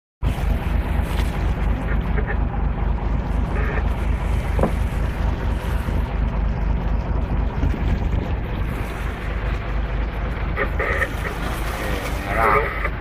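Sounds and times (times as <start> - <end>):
wind buffeting microphone: 0.2 - 10.6
boat motor rumble: 0.2 - 13.0.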